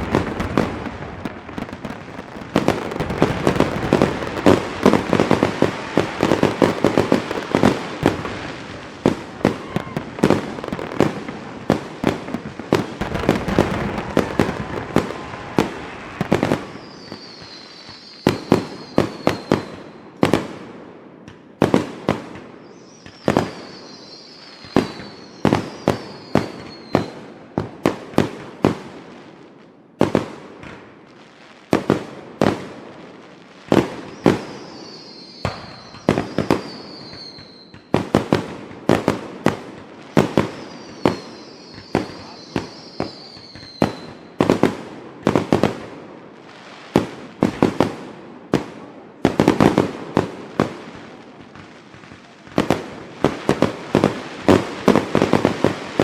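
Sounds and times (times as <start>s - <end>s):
fireworks crackling bangs: 0.0s - 29.1s, 31.6s - 56.0s
high falling firework whistles: 1.6s - 11.2s, 12.7s - 20.0s, 22.6s - 27.2s, 34.0s - 38.0s, 40.1s - 44.5s.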